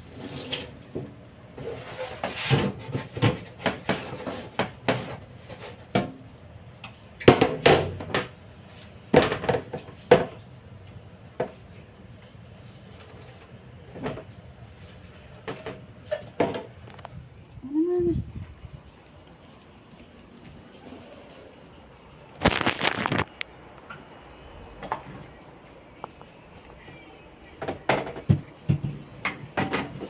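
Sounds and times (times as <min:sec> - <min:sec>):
dishes clattering and clinking: 0:09.1 - 0:10.4, 0:15.4 - 0:16.7, 0:27.6 - 0:30.0.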